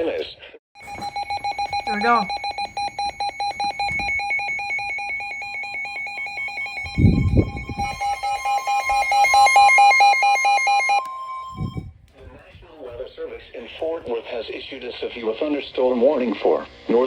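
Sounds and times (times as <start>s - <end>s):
rapid electronic alarm beeping: 0.8s - 11.8s
steady high warning tone: 0.8s - 11.9s.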